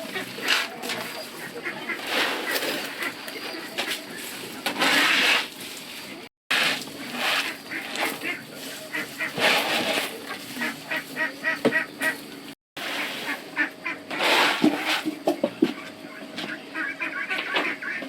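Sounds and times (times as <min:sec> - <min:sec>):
animals making high calls: 0:07.4 - 0:09.5, 0:10.1 - 0:12.3, 0:15.7 - 0:18.0.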